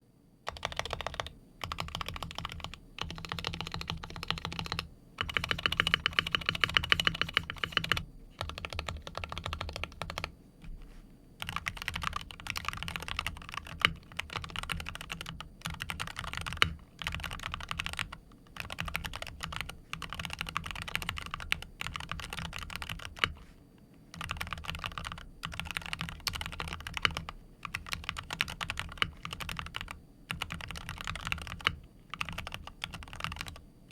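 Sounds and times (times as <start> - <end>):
keyboard typing: 0.5 - 10.3, 11.4 - 23.4, 24.1 - 33.9.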